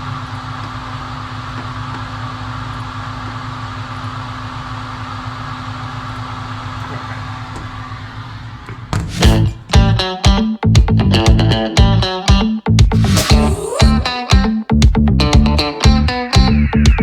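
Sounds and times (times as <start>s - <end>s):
guitar music: 9.2s - 17.0s.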